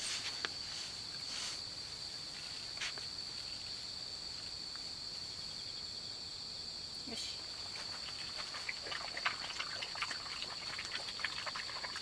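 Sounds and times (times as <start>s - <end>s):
soft rustle: 0.0s - 5.4s
insects trilling: 0.0s - 12.0s.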